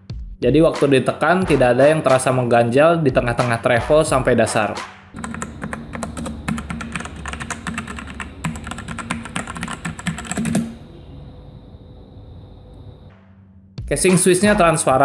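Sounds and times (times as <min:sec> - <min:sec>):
mechanical keyboard typing: 0:05.2 - 0:10.8
faint background hum: 0:05.2 - 0:13.1.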